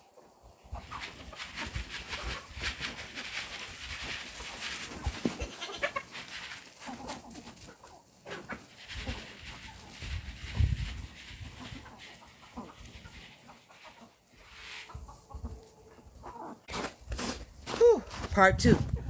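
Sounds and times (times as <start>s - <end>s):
rustling and clattering: 0.7s - 15.2s.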